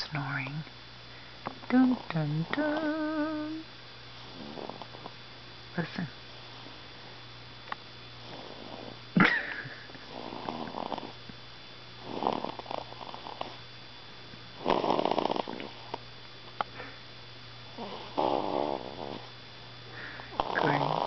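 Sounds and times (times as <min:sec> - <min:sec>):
baby snoring: 0:04.3 - 0:05.1, 0:10.1 - 0:11.2, 0:12.0 - 0:13.6, 0:14.6 - 0:16.0, 0:17.7 - 0:19.3, 0:20.0 - 0:21.0.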